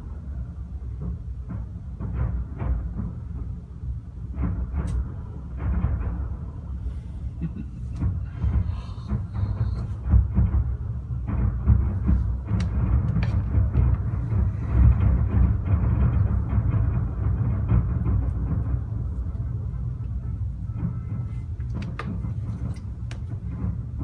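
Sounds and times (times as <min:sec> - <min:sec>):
fireworks booming: 0:00.0 - 0:24.0
sharp firework cracks: 0:04.3 - 0:06.9.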